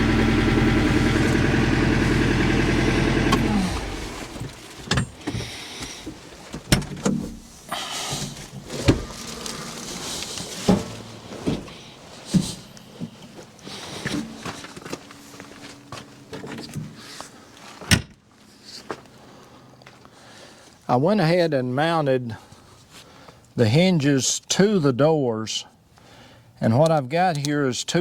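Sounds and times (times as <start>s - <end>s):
engine running and shutting off: 0.0s - 6.7s, 7.8s - 17.9s.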